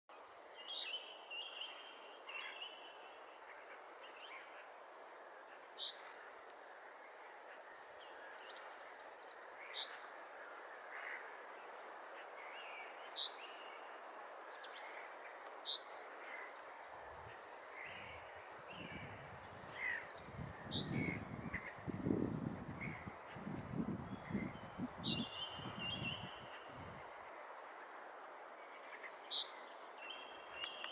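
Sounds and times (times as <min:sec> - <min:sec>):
great tit singing: 0:17.2 - 0:26.8.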